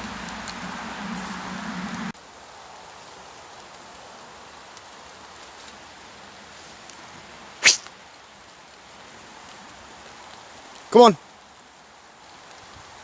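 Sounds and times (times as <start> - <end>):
short sharp loud sound: 7.6 - 7.8.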